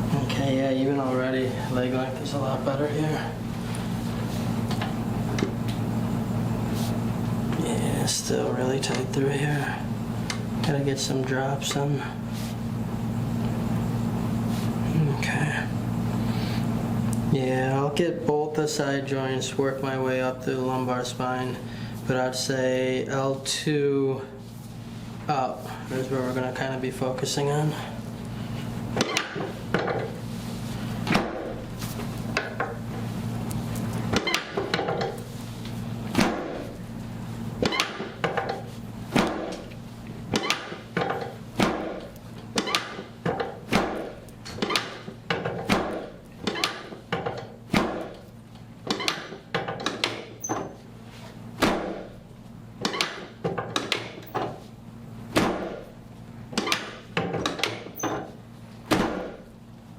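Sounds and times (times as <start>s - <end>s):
drop table thudding: 36.1s - 36.7s, 37.6s - 39.7s, 40.3s - 48.2s, 51.6s - 52.1s.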